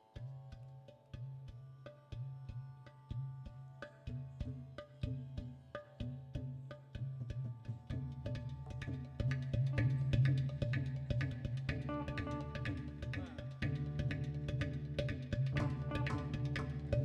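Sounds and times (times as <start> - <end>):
hand percussion strokes: 4.1 - 17.0
plucked string notes: 8.6 - 17.0
low held bass note: 11.7 - 17.0.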